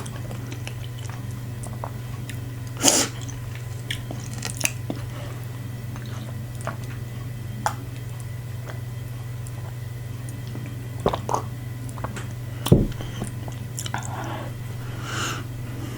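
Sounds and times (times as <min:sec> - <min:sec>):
close chewing and mouth sounds: 0:00.0 - 0:07.0, 0:07.6 - 0:14.5
low hum: 0:12.3 - 0:15.9.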